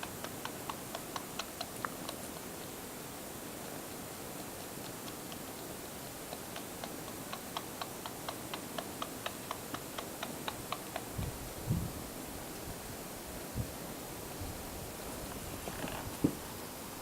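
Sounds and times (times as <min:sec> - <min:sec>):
kittens suckling with wet smacking: 0:03.9 - 0:11.2.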